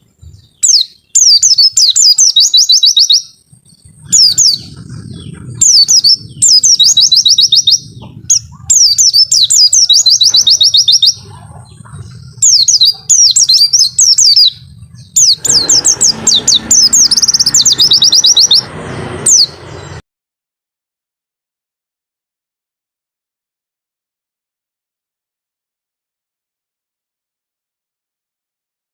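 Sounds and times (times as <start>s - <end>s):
bird singing whistled trills: 0.3s - 20.0s.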